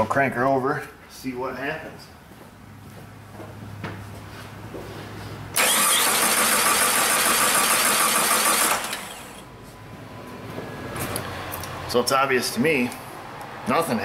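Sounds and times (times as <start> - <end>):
car engine cranking on starter: 5.6 - 9.5.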